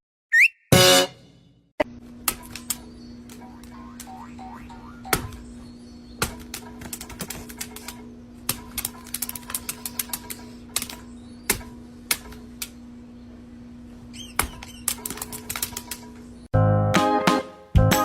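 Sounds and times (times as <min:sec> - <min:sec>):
steady low hum: 0:01.2 - 0:14.4.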